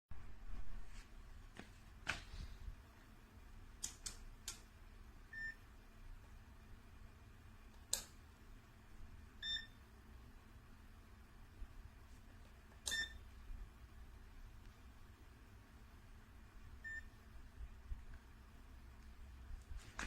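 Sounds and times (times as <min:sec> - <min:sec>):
short electronic beeps: 0:09.4 - 0:09.8, 0:12.9 - 0:13.2.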